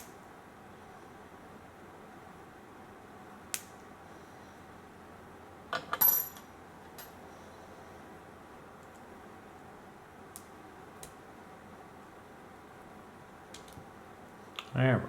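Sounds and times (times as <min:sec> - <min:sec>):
metal parts clinking on hard surface: 0:05.8 - 0:07.2.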